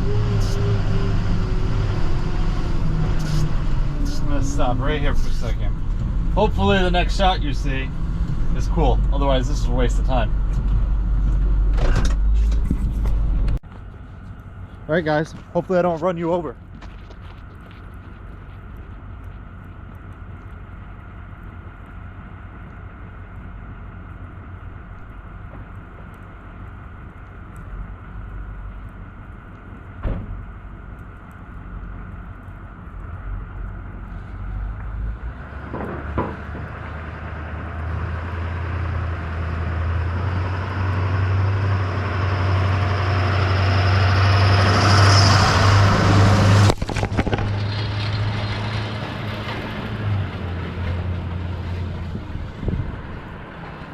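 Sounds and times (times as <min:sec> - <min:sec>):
diesel truck engine approaching: 0:00.0 - 0:53.9
tyre noise on snowy road: 0:00.0 - 0:53.9
mud flaps smacking camera: 0:46.6 - 0:47.8.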